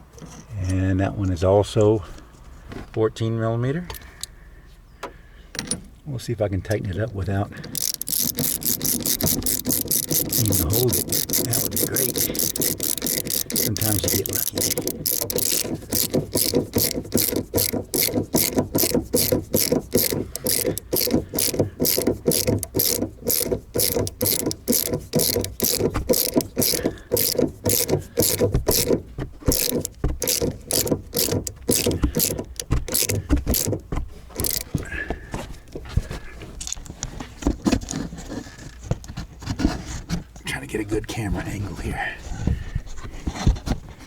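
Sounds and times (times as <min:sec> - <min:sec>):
ratchet wrench clicking: 0:07.6 - 0:34.8.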